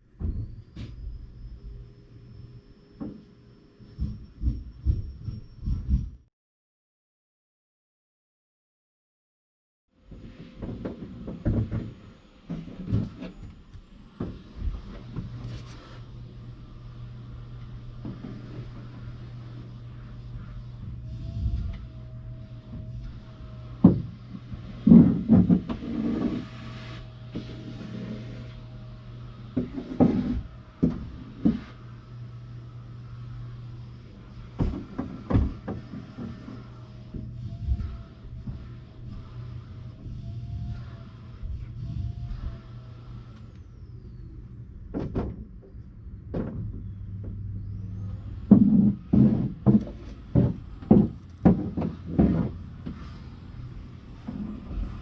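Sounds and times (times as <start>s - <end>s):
muffled vacuum cleaner running: 10.0s - 45.8s, 46.7s - 55.0s
thumps and knocks: 44.9s - 47.5s, 48.5s - 53.0s.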